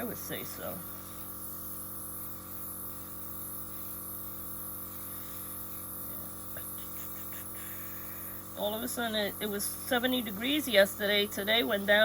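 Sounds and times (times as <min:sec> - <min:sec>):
steady electrical hum: 0:00.0 - 0:12.0.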